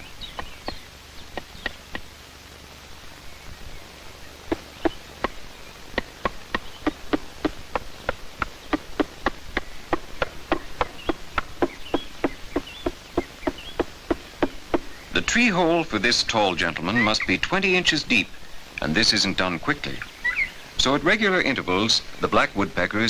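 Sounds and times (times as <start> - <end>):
woodpecker knocking on wood: 0.0 - 2.1, 4.2 - 15.8.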